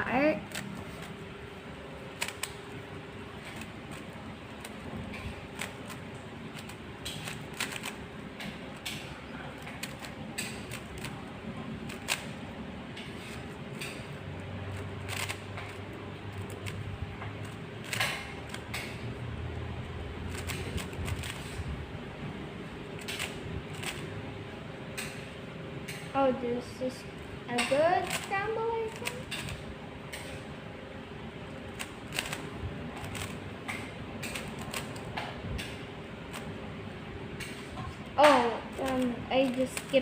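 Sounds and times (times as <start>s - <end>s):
steady low hum: 0.0s - 40.0s
plastic puzzle cube clicking: 2.2s - 2.6s, 6.6s - 8.0s, 9.7s - 11.2s, 11.9s - 12.3s, 14.7s - 16.8s, 20.3s - 21.5s, 23.0s - 24.0s, 28.0s - 29.6s, 31.8s - 32.4s, 33.0s - 33.4s, 34.2s - 35.1s, 38.7s - 40.0s.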